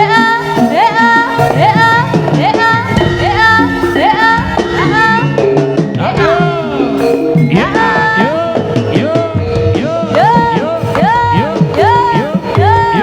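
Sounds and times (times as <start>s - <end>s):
loud live gamelan-style music: 0.0s - 13.0s
swooping lead melody: 0.0s - 13.0s.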